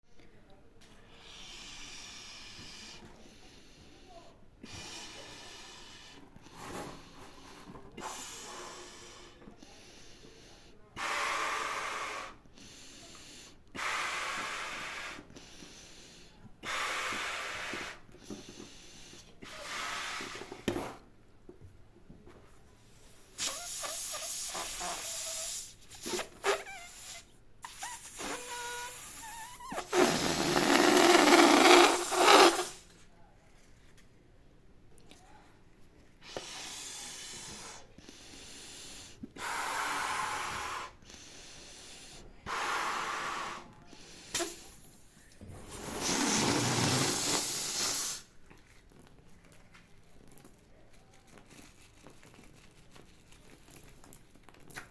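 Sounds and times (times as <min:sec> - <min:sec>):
air rushing through balloons: 0:23.4 - 0:32.8, 0:45.5 - 0:48.3
stretched rubber squeaks: 0:27.6 - 0:32.8.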